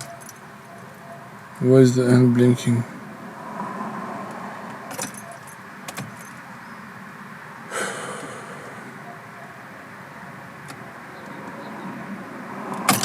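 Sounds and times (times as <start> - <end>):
car keys clicking and jangling: 0.0 - 0.5, 4.9 - 6.4
low hum in car cabin: 4.6 - 12.4.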